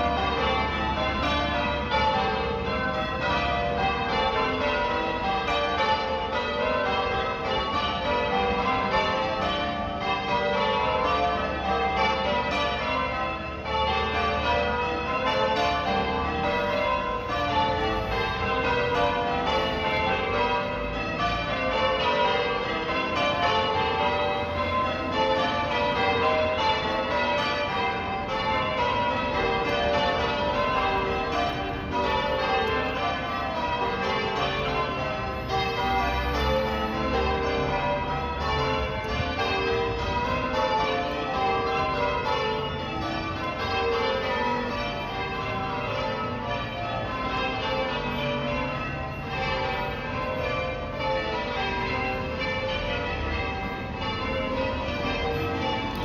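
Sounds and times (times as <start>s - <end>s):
church bells ringing: 0.0s - 56.0s.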